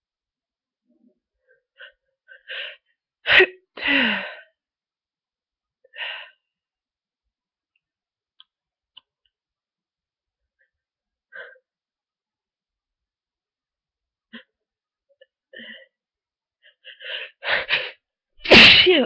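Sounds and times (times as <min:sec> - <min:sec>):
person sneezing: 0:18.4 - 0:19.0.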